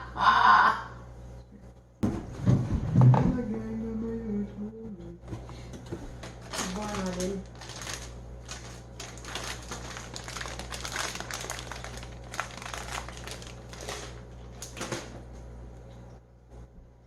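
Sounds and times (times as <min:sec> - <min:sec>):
packaging crinkling and rustling: 0:06.2 - 0:15.2.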